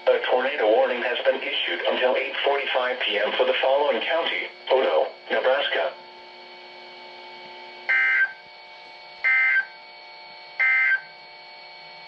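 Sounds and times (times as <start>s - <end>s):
faint broadcast hum: 0.0s - 12.0s
buzzing two-tone data bursts: 7.9s - 8.4s.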